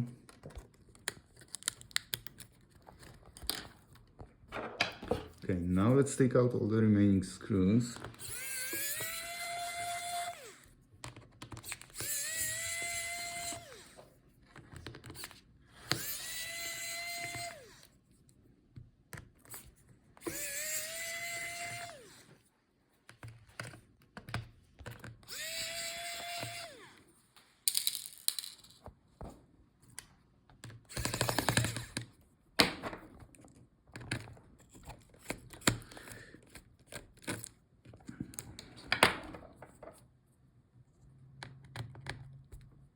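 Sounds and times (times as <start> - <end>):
electric screwdriver whine: 8.1 - 10.7, 11.7 - 14.1, 15.2 - 18.0, 20.2 - 22.4, 25.3 - 27.0, 30.9 - 32.0.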